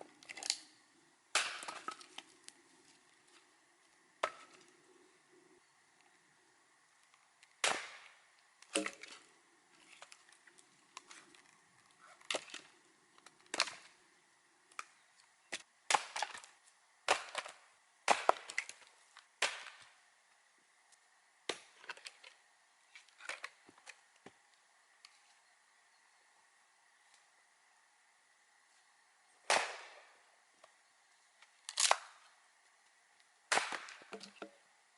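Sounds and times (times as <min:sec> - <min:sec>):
wood splitting crackle: 0:00.2 - 0:00.7, 0:01.3 - 0:04.7, 0:07.0 - 0:14.0, 0:14.7 - 0:20.0, 0:29.4 - 0:30.8, 0:31.4 - 0:32.4, 0:33.2 - 0:34.5
axe chopping firewood: 0:01.3 - 0:02.3, 0:04.2 - 0:04.6, 0:07.6 - 0:09.3, 0:15.5 - 0:19.9, 0:21.5 - 0:22.1, 0:29.4 - 0:30.1, 0:33.5 - 0:34.6.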